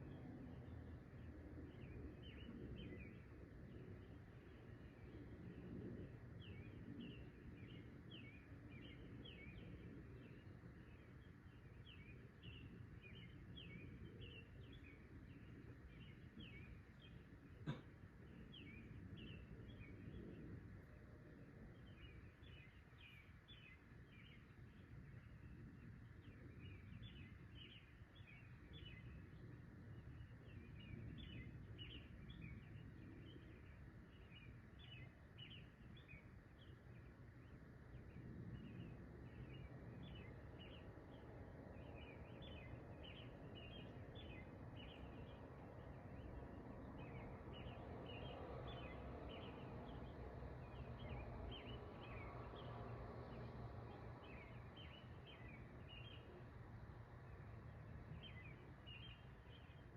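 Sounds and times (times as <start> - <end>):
bird chirping: 41.8 - 59.9.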